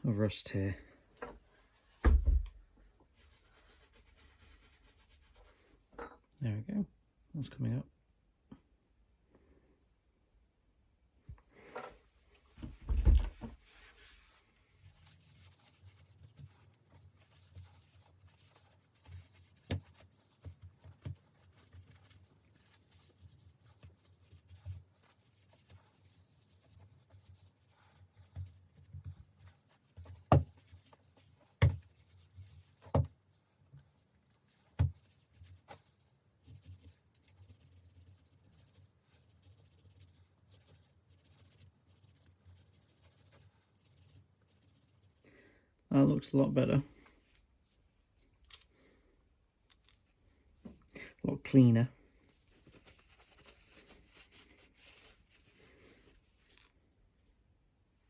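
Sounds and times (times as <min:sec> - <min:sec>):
thump: 0:02.0 - 0:02.6, 0:12.6 - 0:13.5.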